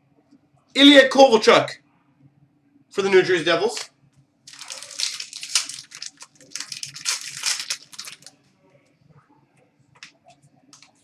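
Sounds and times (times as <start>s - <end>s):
packaging crinkling and rustling: 4.5s - 8.4s.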